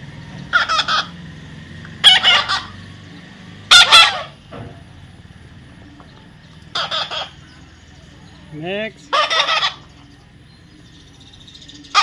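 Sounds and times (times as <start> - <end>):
parrot harsh calls: 0.5 - 1.2, 2.0 - 2.8, 3.7 - 4.4, 6.7 - 7.4, 9.1 - 10.0.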